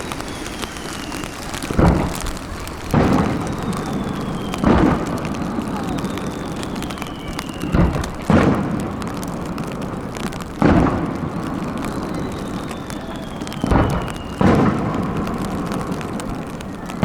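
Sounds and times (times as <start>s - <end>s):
faint falling whistle: 0.0s - 8.1s, 11.8s - 14.8s
fireworks deep booms: 0.0s - 17.0s.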